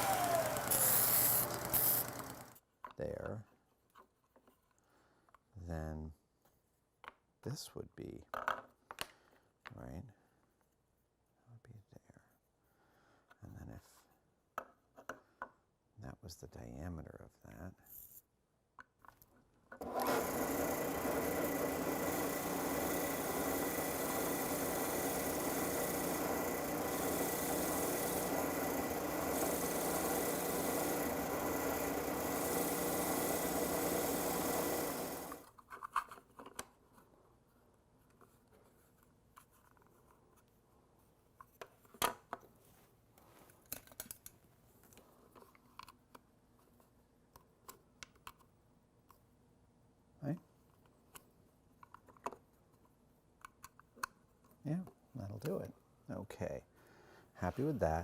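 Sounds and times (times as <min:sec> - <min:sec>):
motor-driven shop tool running: 0:00.0 - 0:02.6, 0:19.8 - 0:35.5
small clicks and handling noises: 0:35.4 - 0:37.1, 0:41.4 - 0:49.3, 0:50.4 - 0:55.7.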